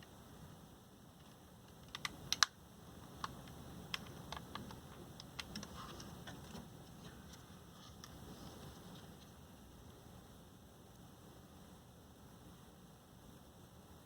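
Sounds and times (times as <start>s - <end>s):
laptop parts clicking and tapping: 1.2s - 7.4s.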